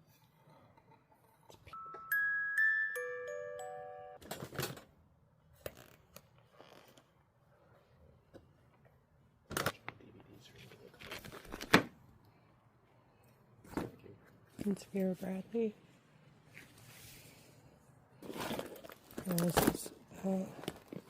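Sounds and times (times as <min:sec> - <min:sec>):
bell-like chimes: 0:01.8 - 0:04.2.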